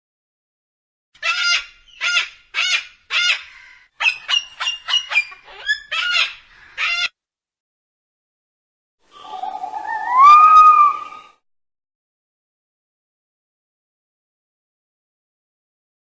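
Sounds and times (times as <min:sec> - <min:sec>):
bird calling: 0:01.2 - 0:07.1, 0:09.1 - 0:11.4.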